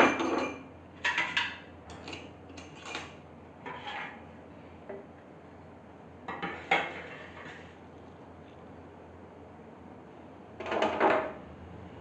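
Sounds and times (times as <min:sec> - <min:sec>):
metal spoon scraping a pot: 0:03.6 - 0:04.2.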